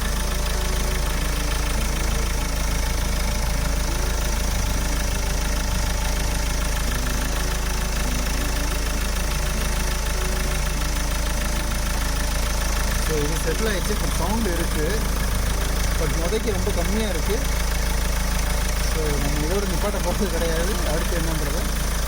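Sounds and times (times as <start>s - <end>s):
light engine whistle: 0.0s - 22.0s
turbocharged engine idling: 0.0s - 22.0s.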